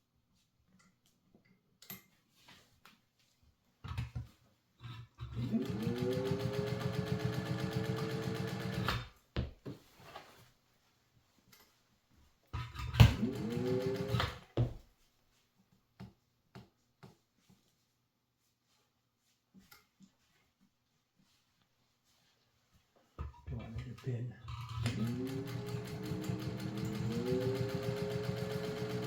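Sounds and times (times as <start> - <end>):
sewing machine motor: 5.2 - 9.1, 12.8 - 14.5, 24.5 - 29.0.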